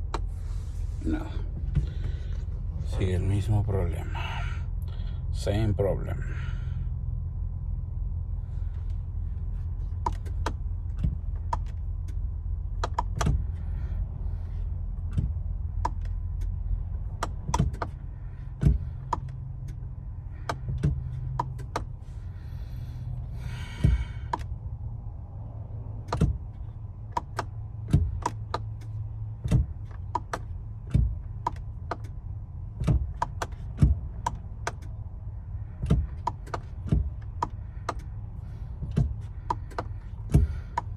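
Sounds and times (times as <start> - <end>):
steady low hum: 0.0 - 40.9
sharp clicks: 12.8 - 13.5.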